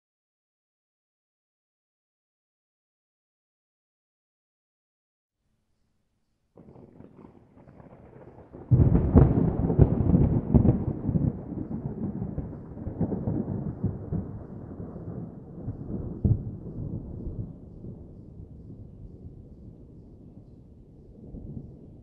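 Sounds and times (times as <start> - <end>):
thunderclap: 6.6 - 22.0.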